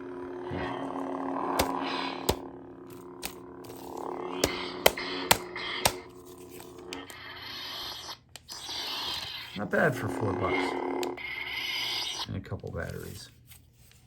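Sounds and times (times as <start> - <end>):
toy lightsaber hum: 0.0 - 12.3
lightsaber sharp hits: 1.6 - 6.1.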